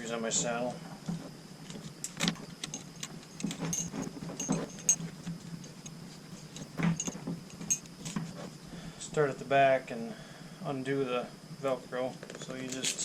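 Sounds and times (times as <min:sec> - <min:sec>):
metal climbing hardware clinking: 0:01.6 - 0:08.5.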